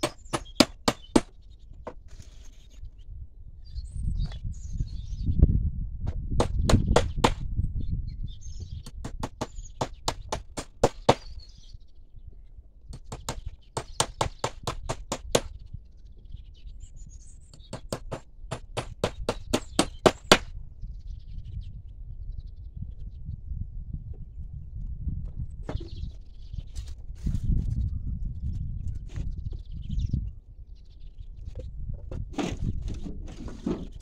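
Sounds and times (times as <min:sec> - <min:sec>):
hammer striking nails into wood: 0:00.0 - 0:01.3, 0:06.4 - 0:07.4, 0:08.8 - 0:11.3, 0:13.0 - 0:15.5, 0:17.6 - 0:20.5
birds chirping: 0:00.0 - 0:05.4, 0:06.4 - 0:23.4, 0:25.4 - 0:27.0, 0:28.4 - 0:34.0.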